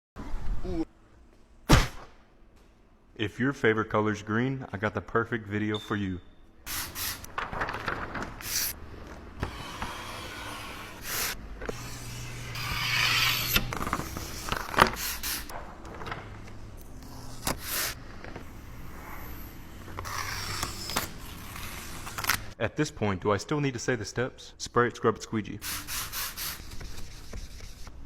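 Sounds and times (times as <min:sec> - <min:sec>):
spray bottle spritzing: 0:25.6 - 0:26.8.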